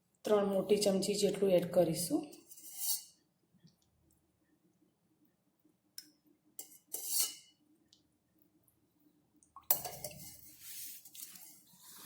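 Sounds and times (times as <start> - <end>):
scraping and rustling in bowl: 2.4 - 3.2, 6.6 - 7.5, 9.7 - 12.0
metal spoon clinking steel bowl: 6.6 - 7.5, 9.7 - 10.4.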